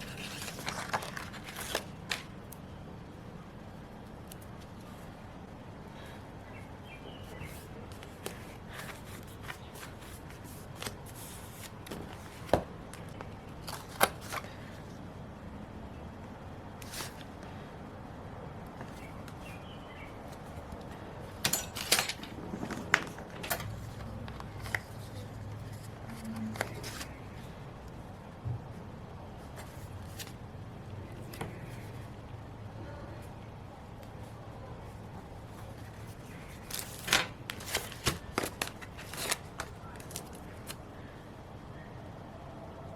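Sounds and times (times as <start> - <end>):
paper rustling: 0.0 - 2.3, 7.2 - 14.8, 16.8 - 17.3, 20.3 - 27.2, 35.4 - 40.8.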